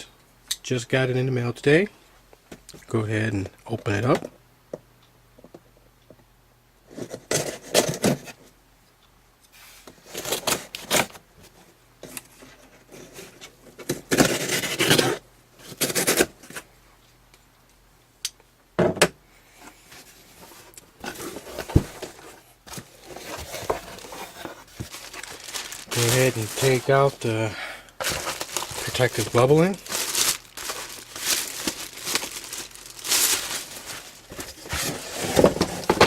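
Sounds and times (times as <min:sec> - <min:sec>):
packaging ripping and rustling: 0:21.0 - 0:27.3, 0:28.0 - 0:36.0.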